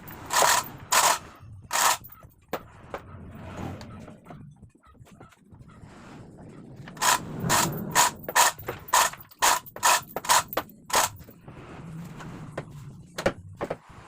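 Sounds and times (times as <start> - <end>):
ratchet clicking: 0.0 - 2.2, 7.0 - 11.3.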